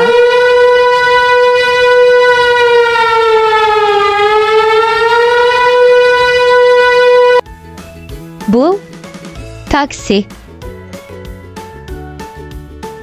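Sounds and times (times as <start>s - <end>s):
fire engine siren wailing: 0.0s - 7.4s.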